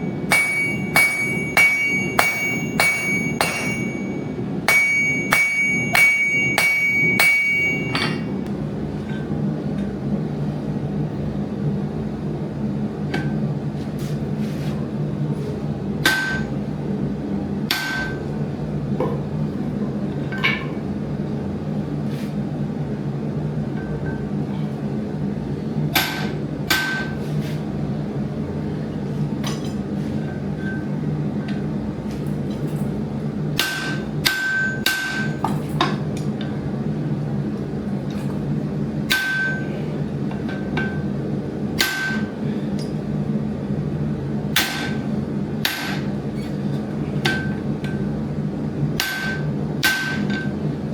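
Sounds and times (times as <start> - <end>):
steady low hum: 0.0 - 50.9
hammer striking metal: 0.1 - 8.4, 16.0 - 16.6, 17.7 - 18.2, 26.0 - 27.2, 33.6 - 35.4, 39.1 - 39.7, 41.8 - 42.3, 44.6 - 45.0, 45.6 - 46.1, 49.0 - 50.5.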